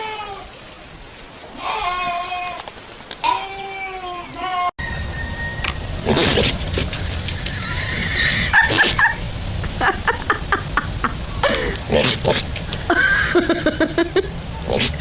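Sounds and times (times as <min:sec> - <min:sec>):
goats bleating: 0:00.0 - 0:00.6, 0:01.5 - 0:04.8.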